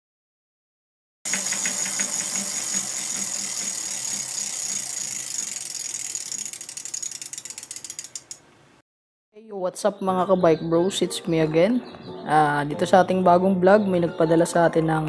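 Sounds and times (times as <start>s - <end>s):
bicycle freewheel clicking: 1.3s - 8.4s.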